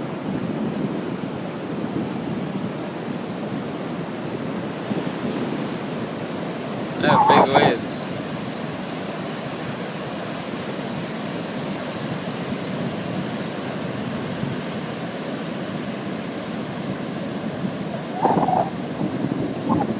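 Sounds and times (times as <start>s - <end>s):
waves breaking: 5.9s - 9.2s, 11.7s - 19.9s.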